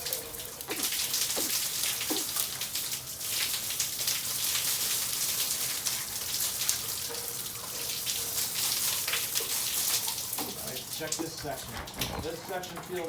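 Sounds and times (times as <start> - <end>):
water splashes: 0.0 - 7.9
garden hose spraying water: 0.0 - 11.7.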